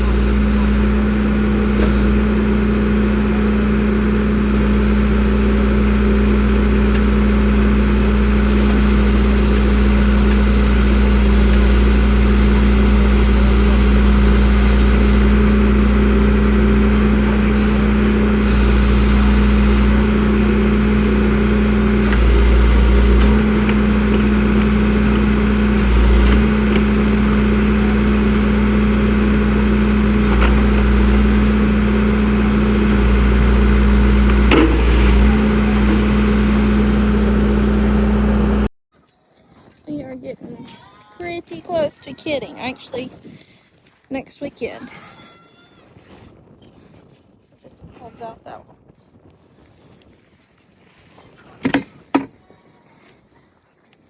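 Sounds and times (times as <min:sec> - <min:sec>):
vehicle engine humming: 0:00.0 - 0:38.7.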